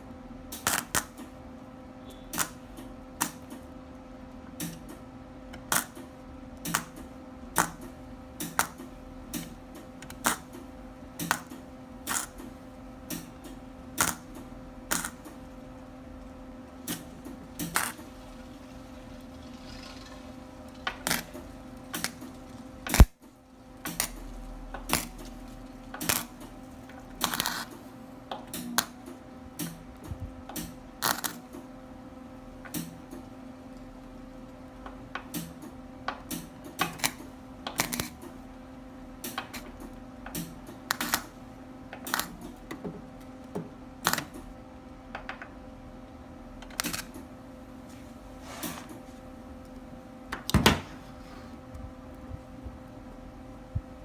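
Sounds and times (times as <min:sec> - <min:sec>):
electrical hum: 0:00.0 - 0:54.0
welder crackles and pops: 0:00.5 - 0:01.4, 0:02.1 - 0:03.8, 0:04.5 - 0:29.0, 0:29.6 - 0:31.7, 0:36.2 - 0:38.4, 0:39.2 - 0:44.6, 0:46.6 - 0:47.3.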